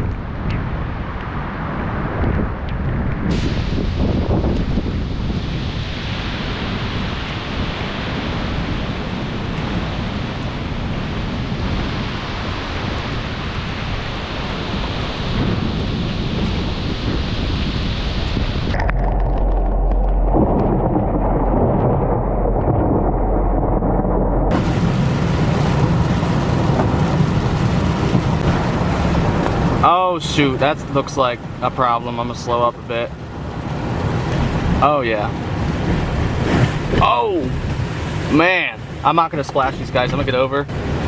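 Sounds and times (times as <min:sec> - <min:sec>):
deep low rumble: 0:00.0 - 0:12.0, 0:14.9 - 0:29.9
heavy rain and wind hiss: 0:00.0 - 0:20.1, 0:24.5 - 0:41.0.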